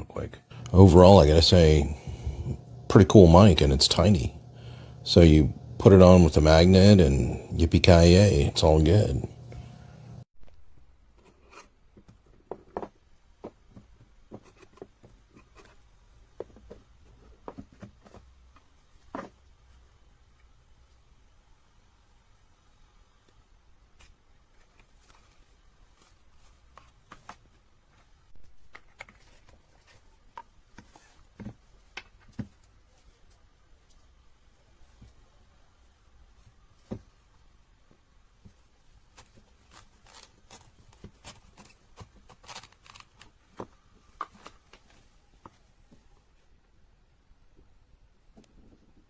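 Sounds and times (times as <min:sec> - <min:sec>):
low steady hum: 0:00.0 - 0:11.1.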